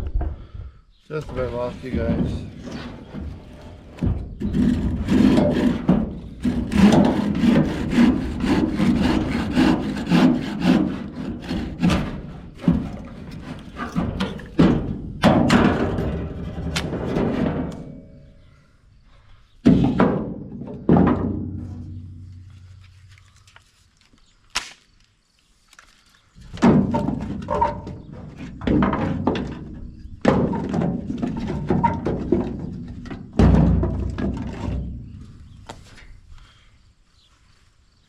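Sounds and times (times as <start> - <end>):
heavy thunks of wood struck: 13.8 - 18.0, 19.6 - 22.2, 26.5 - 35.0.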